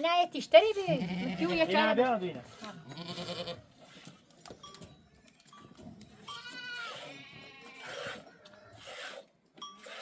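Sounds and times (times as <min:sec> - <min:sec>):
livestock bleating: 0:00.9 - 0:01.9, 0:02.8 - 0:03.7, 0:06.2 - 0:08.0.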